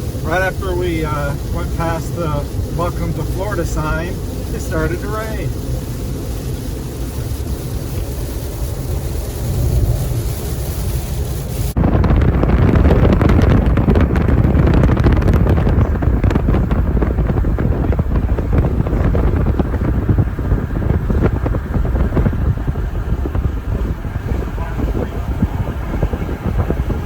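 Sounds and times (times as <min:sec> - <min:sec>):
rain crackling: 0:00.0 - 0:27.0
truck road rumble: 0:00.0 - 0:27.0.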